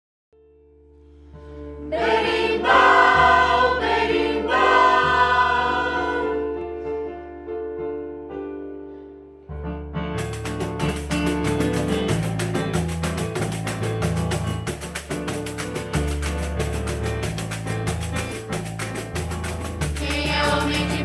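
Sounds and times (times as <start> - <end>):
choir singing sustained chords: 1.8 - 6.6, 20.1 - 21.0
rhythmic music: 10.2 - 21.0.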